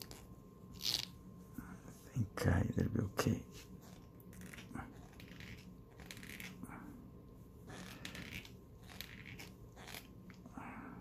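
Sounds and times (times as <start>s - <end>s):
scraping and rubbing: 3.4s - 6.8s, 7.5s - 10.4s.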